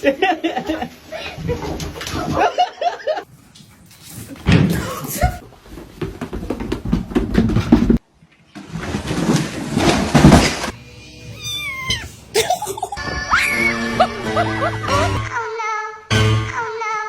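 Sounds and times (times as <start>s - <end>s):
cat meowing: 11.0s - 12.3s
background music: 12.4s - 17.0s.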